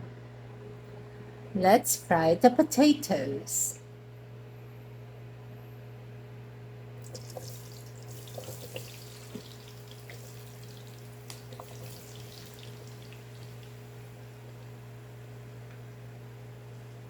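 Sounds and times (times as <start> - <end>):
steady low hum: 0.0 - 17.0
potatoes sizzling in hot oil: 7.0 - 16.9.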